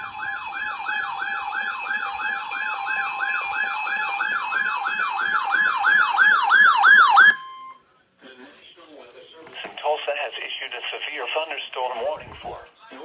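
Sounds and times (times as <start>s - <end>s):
sweeping siren-like tone: 0.0s - 7.8s.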